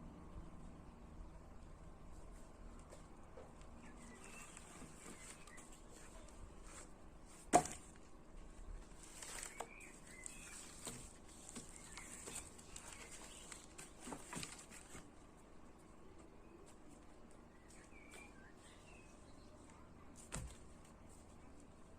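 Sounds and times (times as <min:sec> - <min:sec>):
rustling: 0:02.0 - 0:15.9
faint bird chirps: 0:03.7 - 0:06.4, 0:09.1 - 0:13.7, 0:17.4 - 0:20.0
wood knocking: 0:07.5 - 0:07.9.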